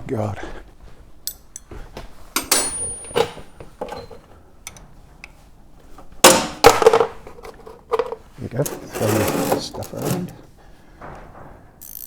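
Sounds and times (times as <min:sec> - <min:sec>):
knocks and clicks of hand tools: 0:01.2 - 0:11.6
plastic parts clattering: 0:02.4 - 0:12.0.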